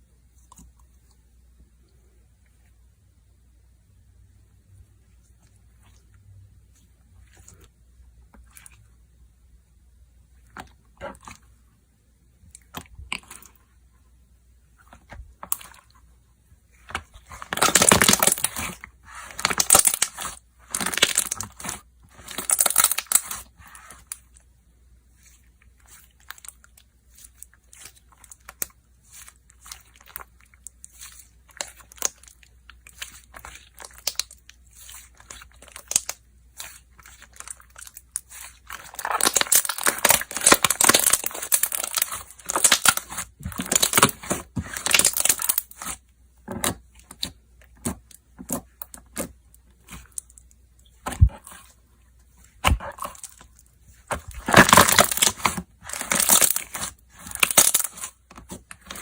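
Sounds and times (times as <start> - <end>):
slime clicks and crackles: 16.9 - 24.2, 26.2 - 46.0, 52.6 - 59.0
slime crunching bursts: 17.2 - 24.2, 25.2 - 46.0, 52.5 - 59.0.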